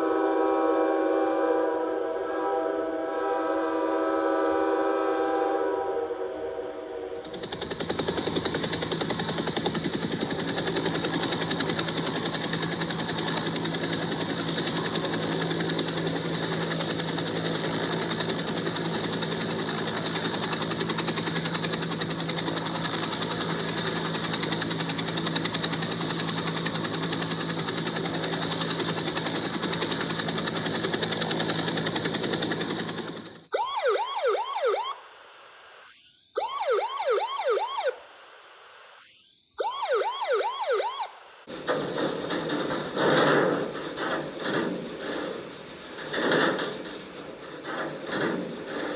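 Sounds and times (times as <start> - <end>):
helicopter rotor chop: 7.2 - 34.0, 41.5 - 48.9
police car siren yelping: 33.5 - 35.0, 36.4 - 38.0, 39.6 - 41.2.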